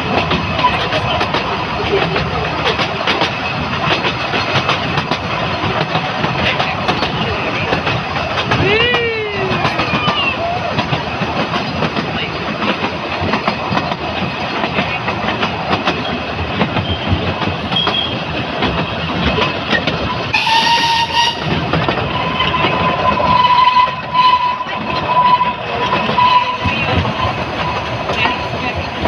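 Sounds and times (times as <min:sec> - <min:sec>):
train wheels clattering: 0:00.0 - 0:29.0
train horn blast: 0:20.3 - 0:21.9.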